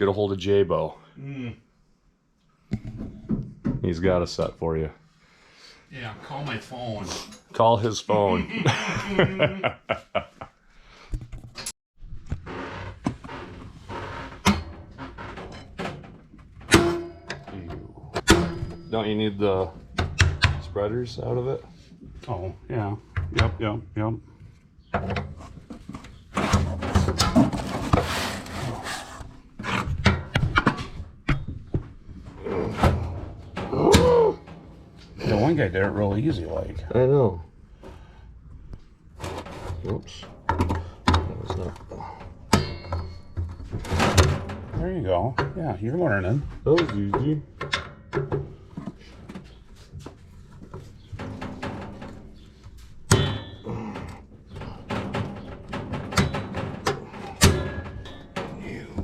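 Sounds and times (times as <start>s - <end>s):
sharp metal knocks and clicks: 14.4s - 19.2s, 19.8s - 20.7s, 40.3s - 45.7s, 46.7s - 49.5s, 50.6s - 59.0s
loud metallic clank: 16.7s - 17.5s, 18.2s - 19.3s
metal tools clicking and knocking: 40.3s - 44.8s, 53.1s - 59.0s.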